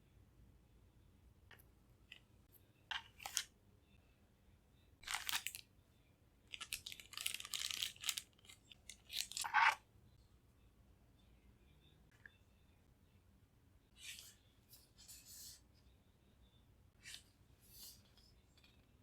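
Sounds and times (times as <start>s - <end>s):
packaging crinkling: 5.0s - 5.6s, 6.5s - 9.5s.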